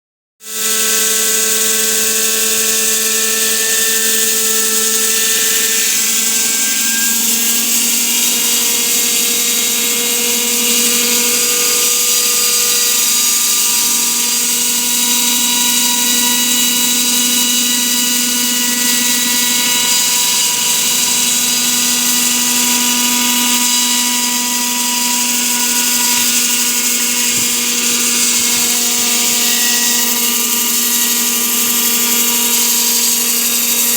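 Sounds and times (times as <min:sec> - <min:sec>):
saw blade whining through concrete: 0:00.4 - 0:33.9.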